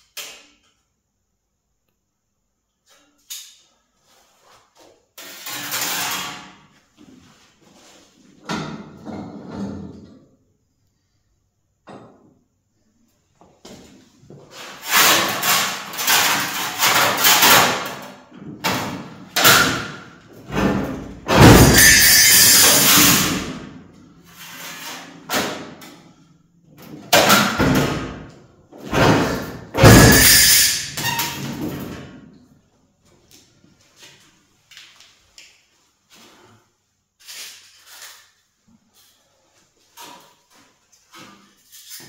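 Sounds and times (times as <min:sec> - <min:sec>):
banging and grating on sheet metal: 0:04.6 - 0:06.8, 0:08.4 - 0:10.3, 0:14.3 - 0:26.2, 0:26.8 - 0:32.2.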